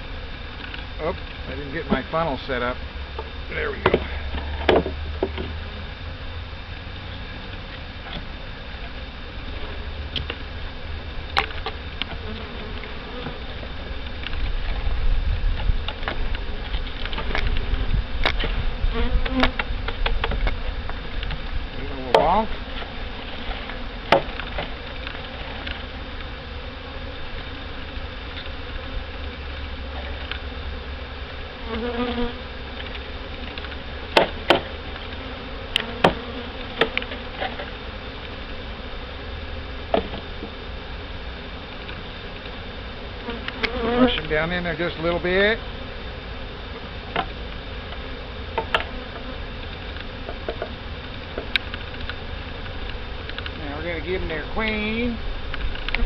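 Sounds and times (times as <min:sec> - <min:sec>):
bees buzzing: 0:00.0 - 0:56.0.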